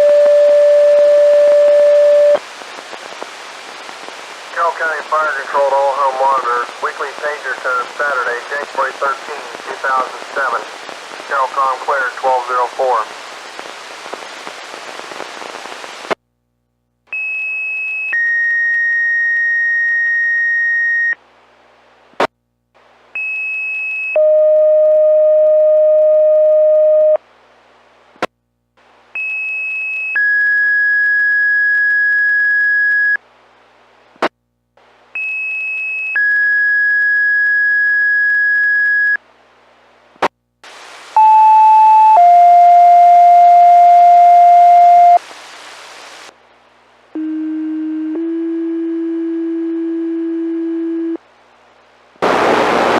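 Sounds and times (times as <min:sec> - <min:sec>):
radio hiss: 0:00.0 - 0:16.2, 0:40.2 - 0:42.1, 0:44.0 - 0:46.4, 0:52.2 - 0:52.9.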